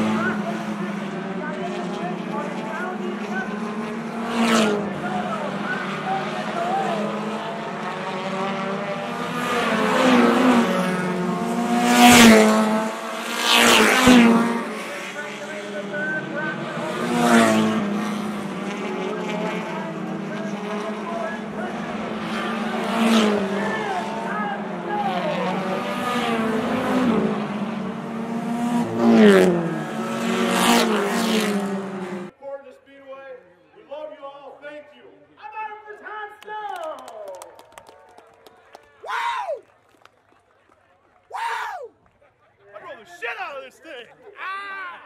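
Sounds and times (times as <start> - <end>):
race cars passing: 0.0 - 32.4.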